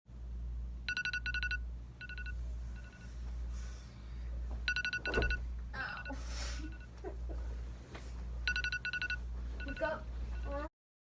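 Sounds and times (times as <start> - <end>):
steady low hum: 0.1 - 10.7
phone alarm beeping: 0.9 - 3.2, 4.6 - 7.0, 8.5 - 10.7.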